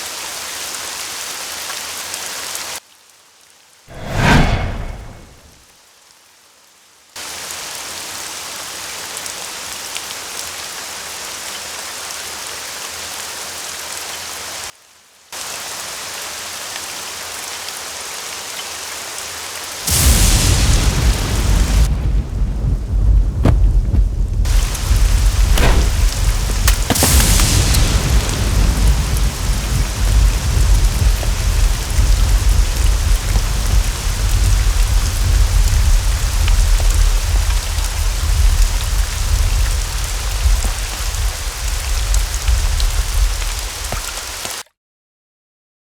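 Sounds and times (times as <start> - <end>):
heavy rain: 0.0 - 3.5, 7.2 - 14.8, 15.4 - 44.6
rain hissing: 19.4 - 44.6
thunder rumbling and cracking: 19.9 - 44.3.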